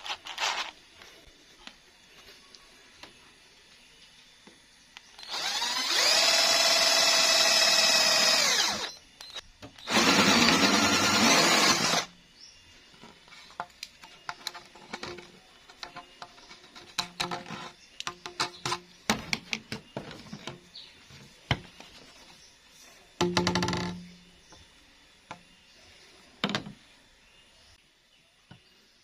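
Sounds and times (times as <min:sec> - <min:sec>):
electric drill whining: 0:05.2 - 0:12.1.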